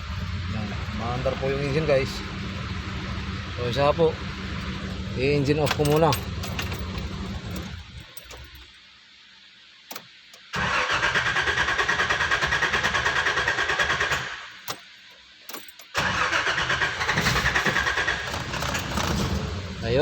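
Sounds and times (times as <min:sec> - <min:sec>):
engine cranking on starter motor: 0:10.4 - 0:14.7, 0:15.8 - 0:20.0.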